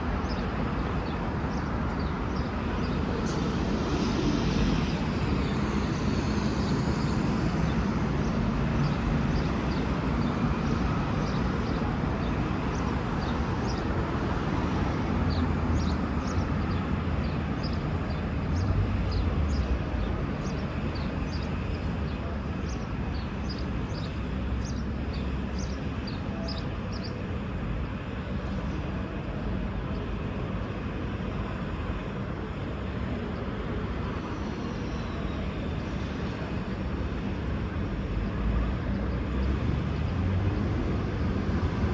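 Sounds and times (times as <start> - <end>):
diesel railcar engine rumbling: 0.0 - 41.9.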